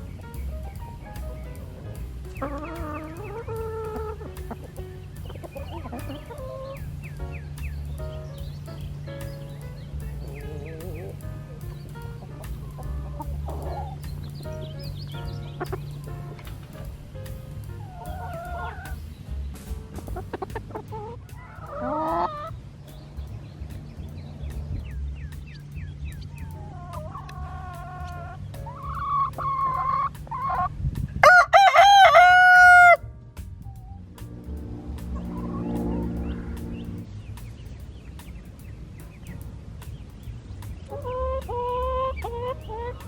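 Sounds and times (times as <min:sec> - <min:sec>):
chickens calling: 0:00.0 - 0:33.0, 0:33.7 - 0:43.0
background music with steady beat: 0:00.0 - 0:43.0.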